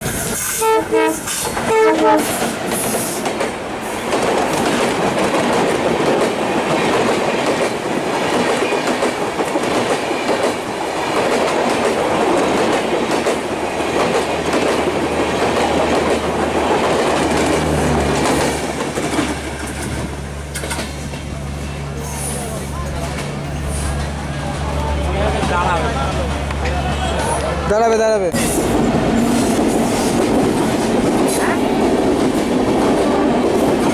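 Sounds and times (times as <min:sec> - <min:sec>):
train clattering on rails: 0:00.0 - 0:33.9
locomotive horn blasts: 0:00.5 - 0:02.4.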